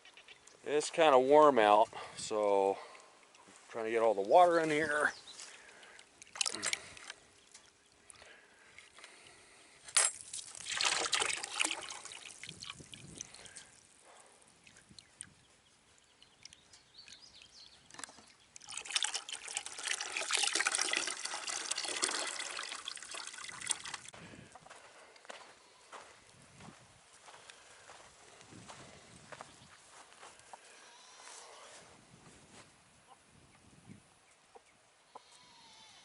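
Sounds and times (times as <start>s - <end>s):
water pouring into a container: 10.3s - 13.8s, 17.4s - 24.1s.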